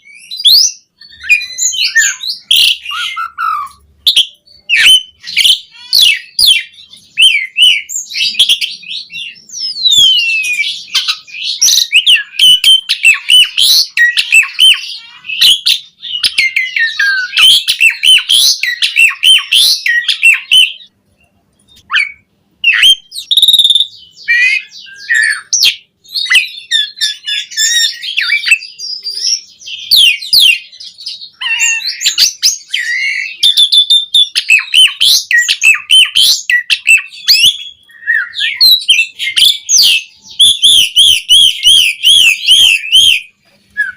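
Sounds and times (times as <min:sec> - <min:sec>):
starling singing: 0:00.0 - 0:21.0, 0:21.6 - 0:43.9.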